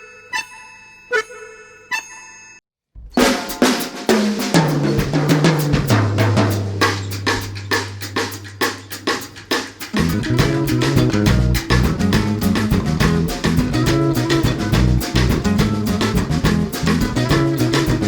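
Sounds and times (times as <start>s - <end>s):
ringing pitched notes: 0.0s - 2.6s
band music with drums and bass: 3.2s - 18.0s.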